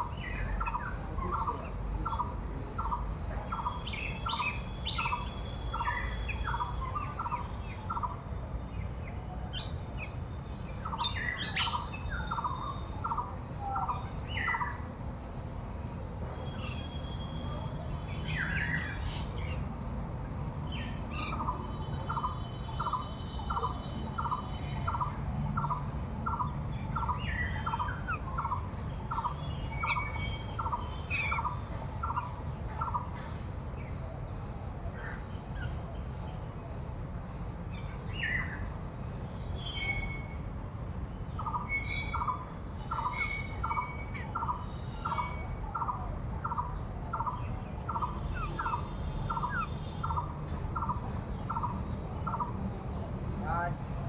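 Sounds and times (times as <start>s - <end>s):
steady high hum: 0.0s - 54.0s
birds chirping: 9.6s - 14.8s, 20.5s - 33.2s, 41.0s - 54.0s.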